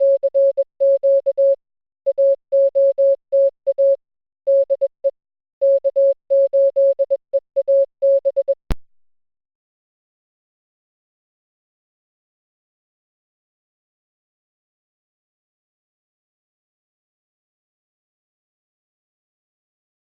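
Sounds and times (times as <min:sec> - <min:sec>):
morse code tone: 0:00.0 - 0:05.0, 0:05.6 - 0:08.6.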